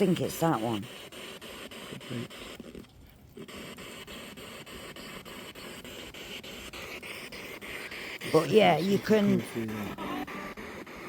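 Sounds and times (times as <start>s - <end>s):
chopped radio static hiss: 0.0s - 11.0s.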